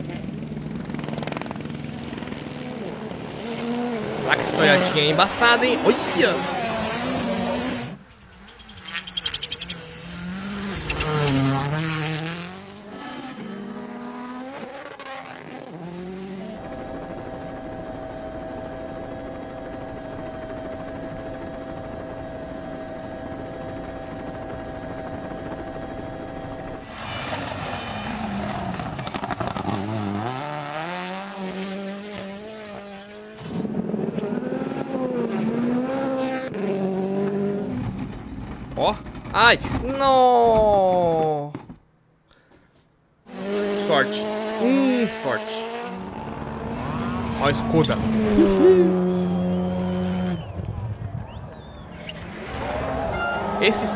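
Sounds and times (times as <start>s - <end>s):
rally car engine revving: 0.0s - 20.6s, 24.4s - 39.9s, 43.3s - 53.9s
engine pops crackling: 28.4s - 29.8s.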